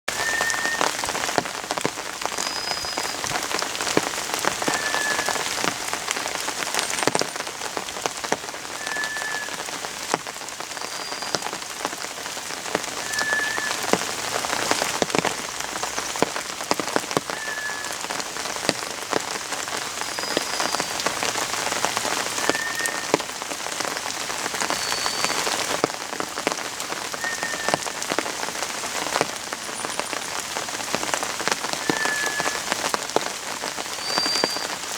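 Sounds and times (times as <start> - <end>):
thrush whistling: 0.1 - 1.1, 2.4 - 3.3, 4.6 - 5.6, 8.7 - 9.7, 10.8 - 11.6, 12.9 - 14.6, 17.2 - 18.8, 20.0 - 21.2, 22.2 - 23.2, 24.7 - 25.6, 27.1 - 28.2, 31.8 - 32.8, 34.0 - 34.8
steady rain pattering: 0.1 - 34.9.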